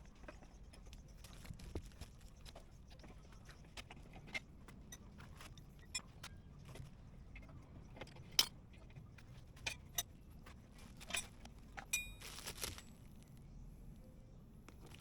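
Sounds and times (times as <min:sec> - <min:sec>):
metal tools clinking: 0:11.9 - 0:12.9.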